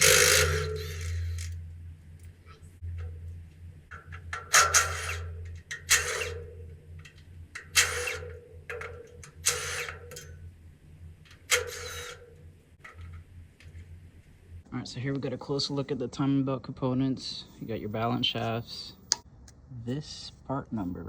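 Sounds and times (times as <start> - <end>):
ratchet wrench clicking: 0.0 - 1.6, 4.4 - 6.4
steady low hum: 0.0 - 21.0.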